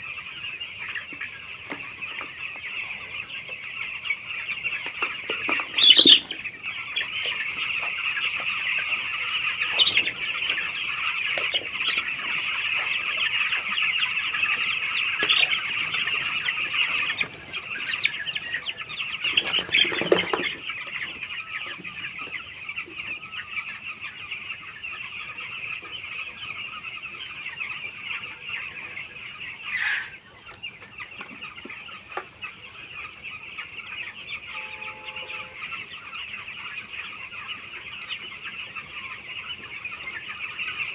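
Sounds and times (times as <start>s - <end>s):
chicks peeping: 0.0s - 40.9s
loud falling chick call: 1.0s - 24.3s, 33.8s - 37.7s.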